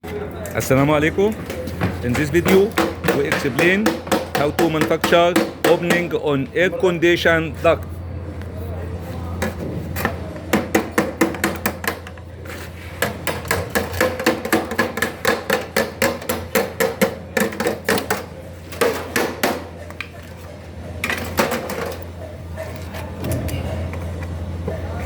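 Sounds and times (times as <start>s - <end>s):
hammer striking sheet-metal duct: 2.4s - 6.1s, 13.0s - 19.7s.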